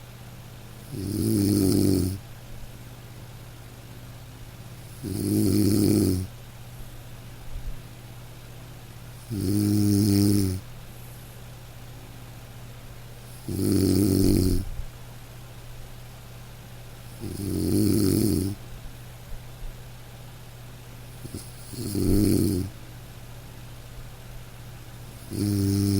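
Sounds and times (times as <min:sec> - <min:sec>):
nasal snoring: 0:00.9 - 0:02.2, 0:04.9 - 0:06.3, 0:09.2 - 0:10.6, 0:13.3 - 0:14.7, 0:17.1 - 0:18.6, 0:21.2 - 0:22.7, 0:25.2 - 0:25.9.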